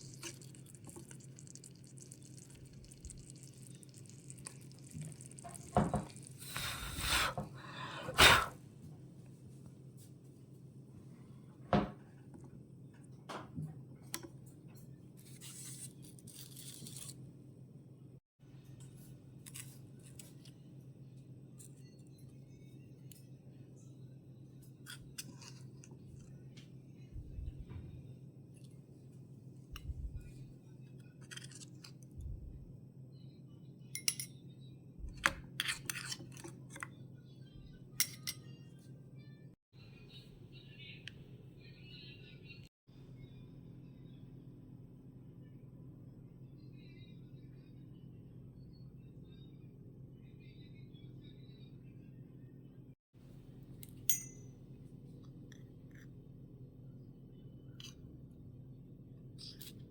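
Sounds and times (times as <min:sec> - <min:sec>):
low steady hum: 0:00.0 - 0:59.9
low hum: 0:20.5 - 0:31.2, 0:32.1 - 0:33.8.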